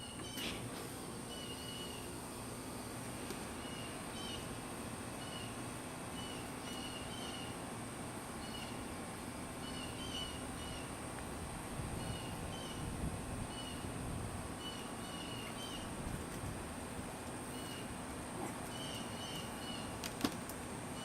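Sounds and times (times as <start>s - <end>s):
outdoor background noise: 0.0s - 21.0s
bird chirping: 9.6s - 10.9s.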